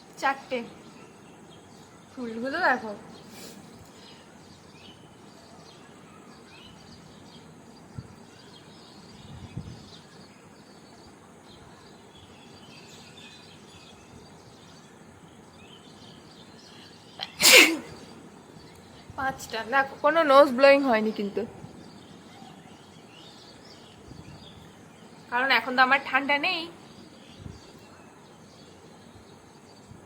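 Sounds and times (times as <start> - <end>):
woman sneezing: 17.2 - 18.0.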